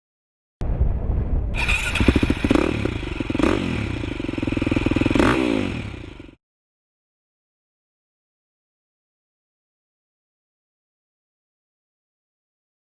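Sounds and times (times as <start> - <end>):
dirt bike engine revving: 1.6 - 6.4.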